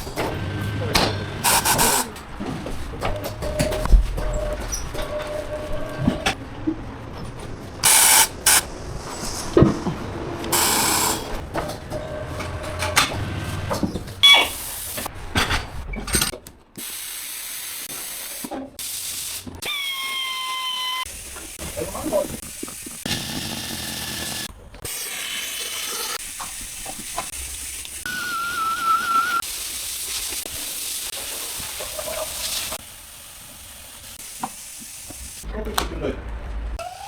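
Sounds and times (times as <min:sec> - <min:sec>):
compressed air blasts: 0:01.4 - 0:02.2, 0:07.8 - 0:09.6, 0:10.5 - 0:11.4
brief whine: 0:28.1 - 0:29.4.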